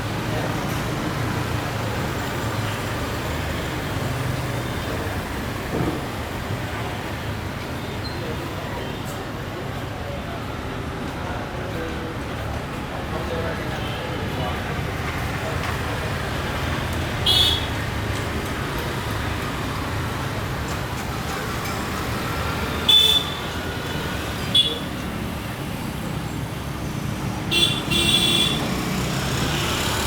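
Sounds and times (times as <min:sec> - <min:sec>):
road traffic rumble: 0:00.0 - 0:30.0.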